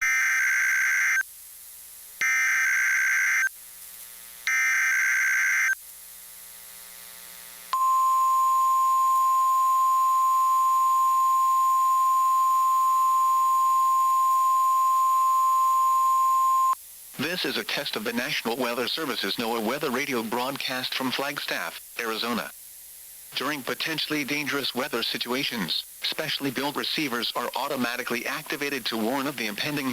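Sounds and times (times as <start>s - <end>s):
harsh digital data bursts: 2.2s - 3.5s, 4.5s - 5.8s.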